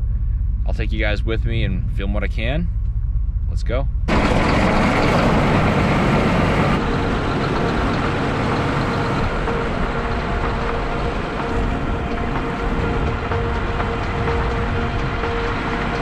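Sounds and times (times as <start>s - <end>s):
faint steady hum: 0.0s - 4.2s
vehicle running: 0.0s - 16.0s
dense rushing noise: 3.5s - 16.0s.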